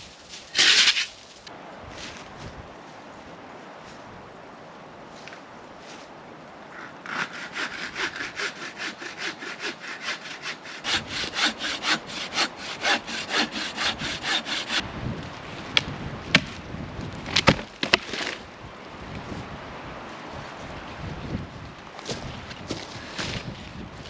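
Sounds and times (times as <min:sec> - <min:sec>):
hand saw cutting wood: 0:00.5 - 0:01.1, 0:06.8 - 0:14.8.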